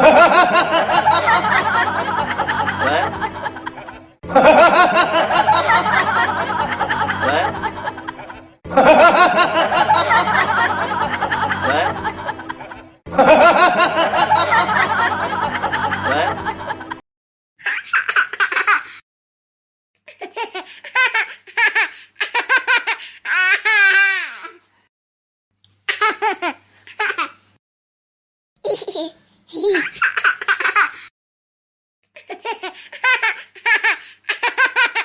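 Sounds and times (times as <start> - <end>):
hearty laughing: 0.0 - 17.0
child laughing: 28.6 - 31.1, 32.2 - 35.0.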